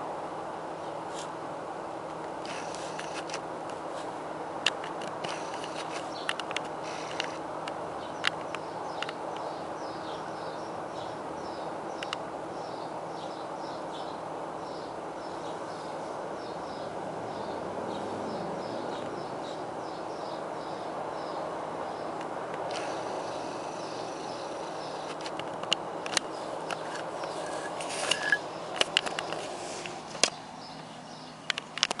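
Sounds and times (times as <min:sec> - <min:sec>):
steady background hiss: 0:00.0 - 0:32.0
sharp clicks: 0:12.0 - 0:12.2.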